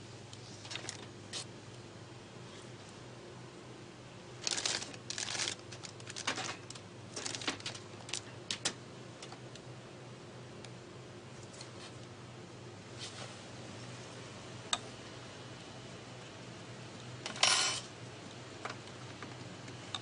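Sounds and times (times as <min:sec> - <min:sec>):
rustling and crinkling: 0:00.4 - 0:01.5, 0:04.4 - 0:09.4, 0:12.9 - 0:13.5.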